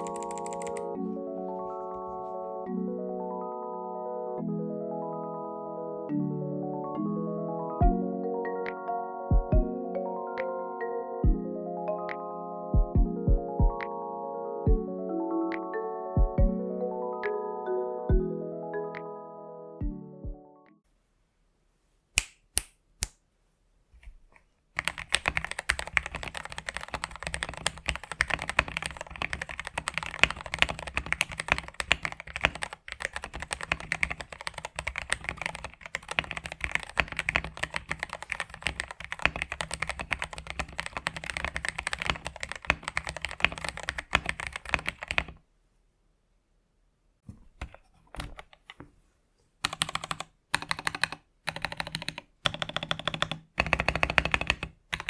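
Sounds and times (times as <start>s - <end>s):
mechanical keyboard typing: 0.0s - 0.9s, 24.8s - 45.4s, 49.6s - 55.0s.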